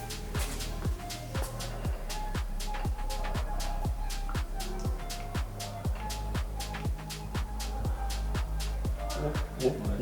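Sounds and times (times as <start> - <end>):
dance music with kick drum: 0.0 - 10.0.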